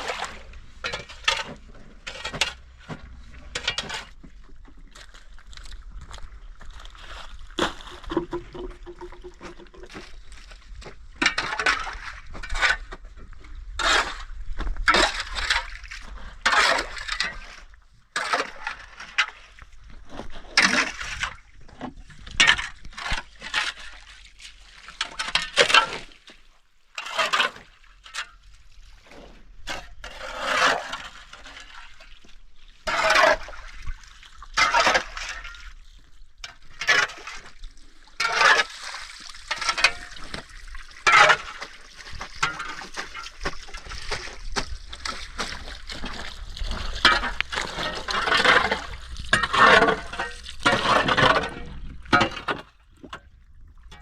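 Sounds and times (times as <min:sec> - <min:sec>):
water splashing by hand: 0:03.2 - 0:10.8, 0:36.9 - 0:52.3.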